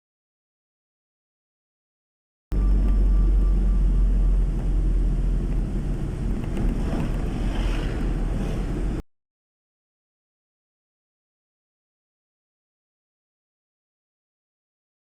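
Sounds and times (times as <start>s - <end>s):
wind rumble on microphone: 2.6s - 9.0s
rushing water roar: 4.5s - 9.0s.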